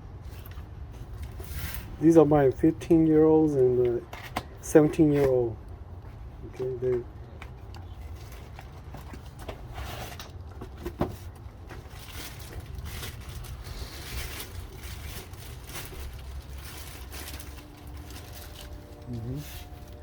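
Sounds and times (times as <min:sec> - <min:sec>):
low steady hum: 0:00.0 - 0:20.0
rustling: 0:07.8 - 0:20.0.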